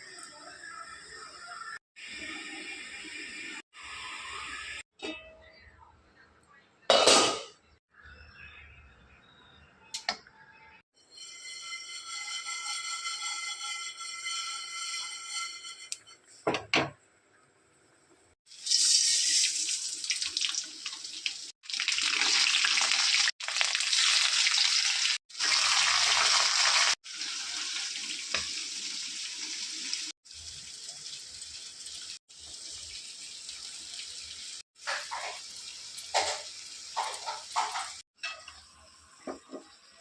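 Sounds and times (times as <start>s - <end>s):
water running from tap: 18.5s - 40.0s.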